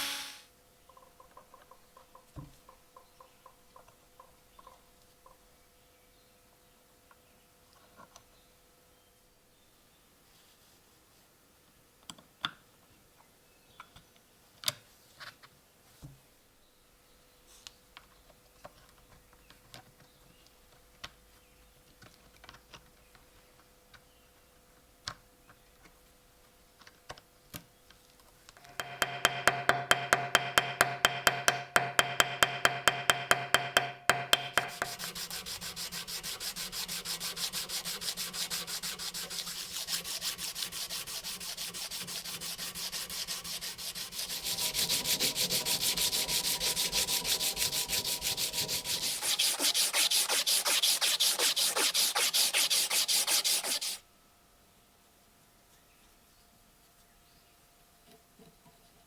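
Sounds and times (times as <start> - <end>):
sanding strokes: 34.5 - 54.0.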